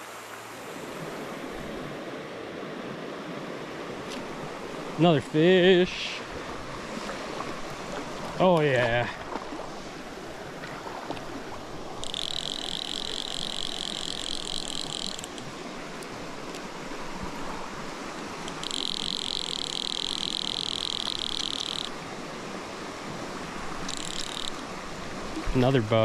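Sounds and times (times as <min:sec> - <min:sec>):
stream water running: 0:00.0 - 0:26.0
animal high pulsing trill: 0:12.0 - 0:15.4, 0:18.5 - 0:22.0, 0:23.9 - 0:24.6.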